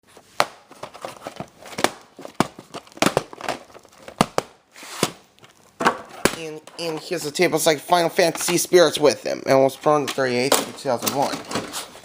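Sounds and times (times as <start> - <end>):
plastic crinkling: 0.7 - 7.4.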